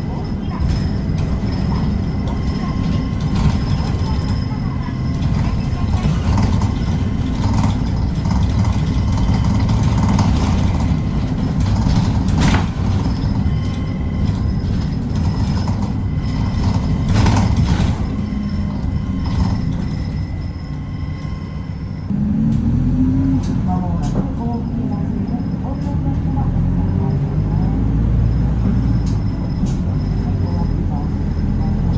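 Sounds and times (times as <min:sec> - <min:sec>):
bus engine and road rumble: 0:00.0 - 0:31.9
cabin rattles and knocks: 0:00.1 - 0:20.6.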